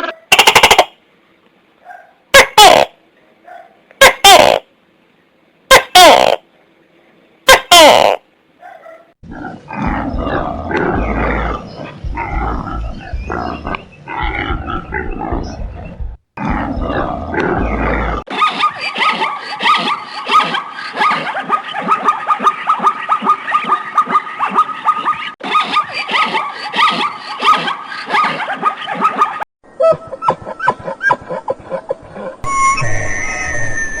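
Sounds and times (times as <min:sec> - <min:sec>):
animal grunting: 0:09.2 - 0:18.2
animal chattering: 0:18.0 - 0:29.3.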